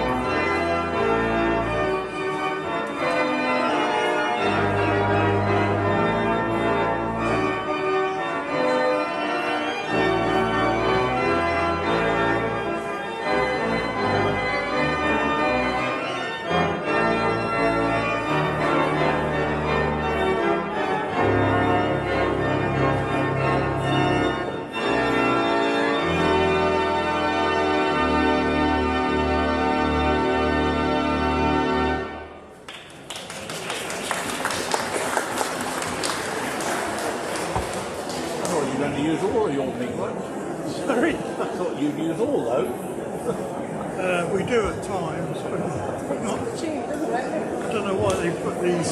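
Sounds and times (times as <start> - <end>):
church organ playing chords: 0.0 - 32.5.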